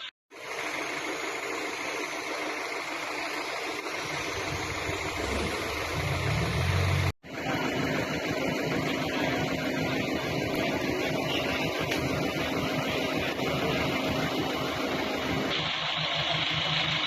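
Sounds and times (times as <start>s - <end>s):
engine running: 0.0s - 17.0s
deep rumble: 4.0s - 7.2s.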